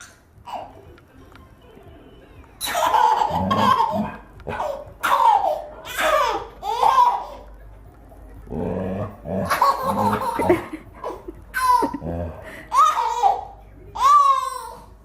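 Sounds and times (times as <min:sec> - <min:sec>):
baby laughing: 0:00.0 - 0:00.9, 0:02.6 - 0:07.5, 0:09.4 - 0:14.9.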